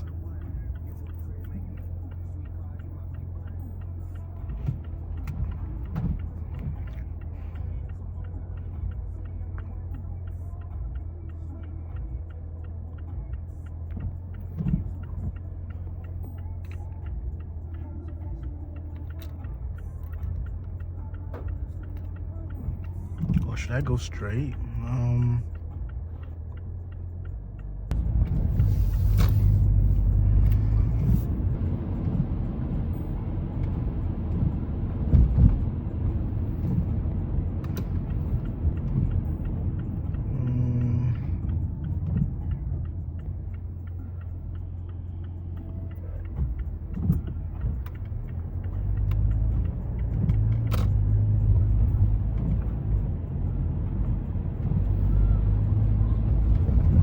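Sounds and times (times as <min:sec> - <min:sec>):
engine and tyre rumble: 0:00.0 - 0:57.0
tyres hissing on wet road: 0:28.4 - 0:32.8.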